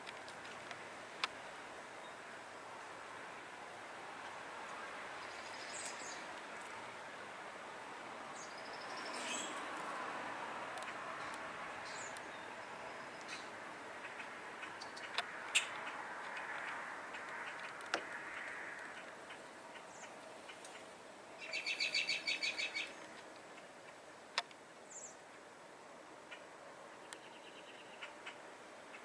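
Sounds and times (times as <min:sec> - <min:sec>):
faint bird trill: 0:19.3 - 0:23.0.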